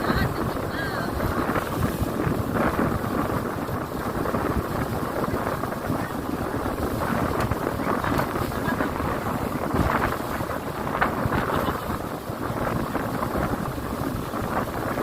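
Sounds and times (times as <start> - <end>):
boat motor: 0.0 - 15.0
water noise: 0.0 - 15.0
wind buffeting microphone: 0.0 - 15.0.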